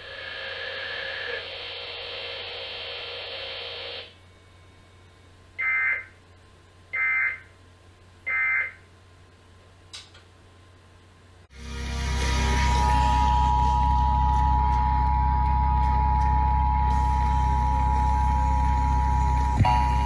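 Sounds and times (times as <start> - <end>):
broadcast hiss with faint tones: 0.2 - 11.5.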